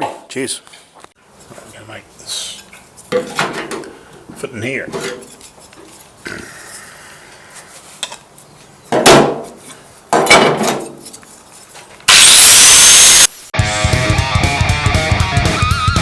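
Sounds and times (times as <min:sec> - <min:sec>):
music: 0:13.6 - 0:16.0.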